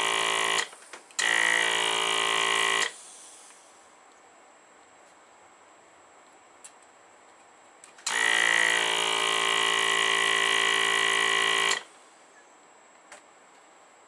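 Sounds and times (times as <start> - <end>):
vacuum pump buzzing: 0.0 - 3.0, 8.1 - 11.9.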